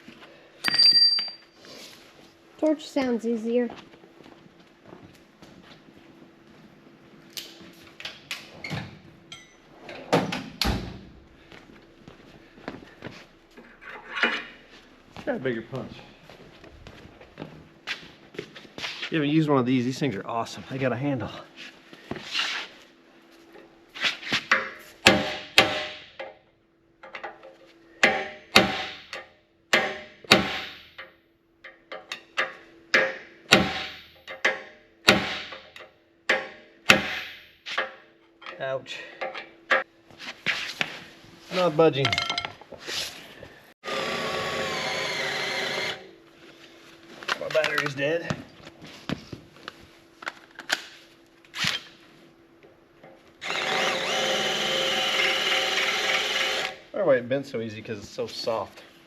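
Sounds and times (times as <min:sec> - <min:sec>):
hammer striking steel punch: 0:25.0 - 0:26.1, 0:28.0 - 0:31.0, 0:33.0 - 0:35.6, 0:36.3 - 0:37.6
power drill running: 0:43.8 - 0:46.1, 0:53.4 - 0:56.8.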